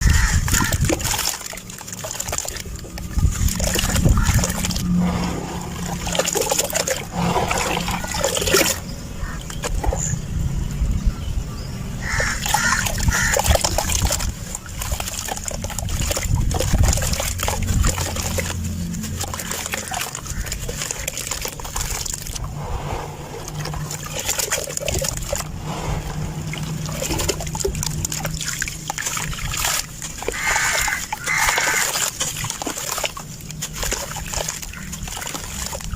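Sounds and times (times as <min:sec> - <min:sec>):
grains trickling: 0:14.2 - 0:35.9.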